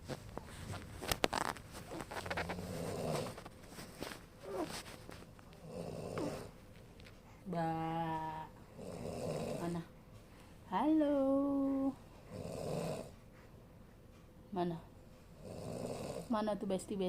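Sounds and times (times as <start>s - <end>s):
man snoring: 2.4s - 3.4s, 5.6s - 6.5s, 8.8s - 9.8s, 12.3s - 13.1s, 15.4s - 16.4s.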